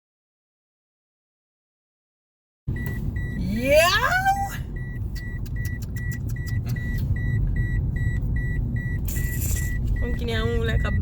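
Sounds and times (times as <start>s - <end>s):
car engine idling: 2.7s - 11.0s
car warning chime beeping: 2.7s - 11.0s
handling clicks in car cabin: 5.1s - 7.1s.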